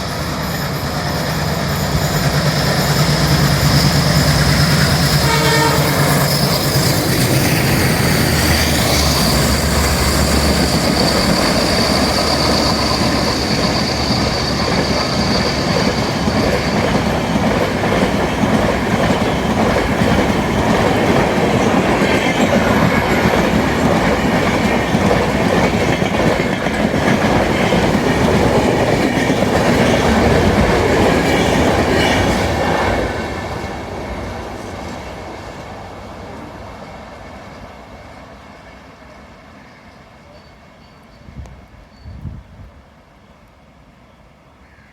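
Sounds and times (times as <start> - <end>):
train wheels clattering over rails: 0.0 - 35.7.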